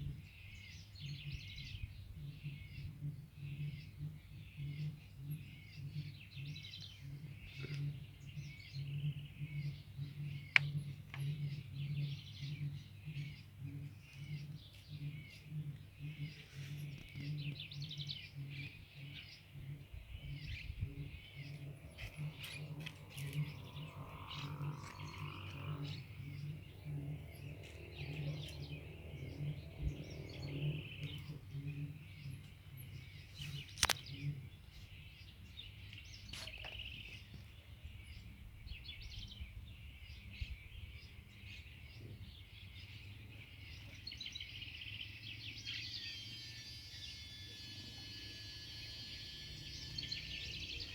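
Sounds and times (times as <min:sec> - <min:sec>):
low pulsing hum: 0:00.0 - 0:35.6, 0:44.2 - 0:50.9
small birds chirping: 0:00.0 - 0:50.9.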